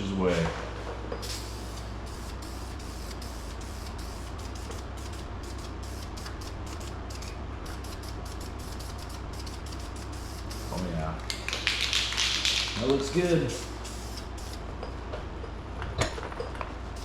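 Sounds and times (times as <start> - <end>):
spray paint can hissing: 1.2 - 10.9, 13.6 - 14.6.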